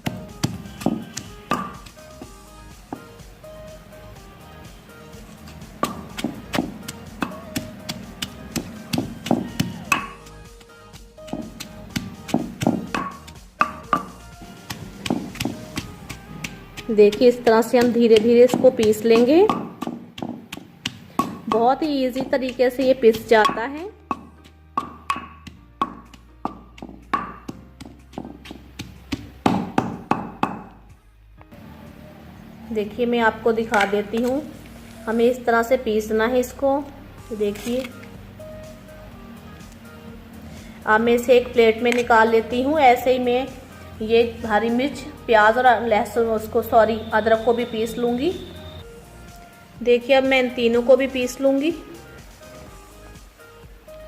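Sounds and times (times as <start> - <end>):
pestle striking metal mortar: 0.0 - 3.1, 5.4 - 30.8
faint background music: 0.0 - 54.0.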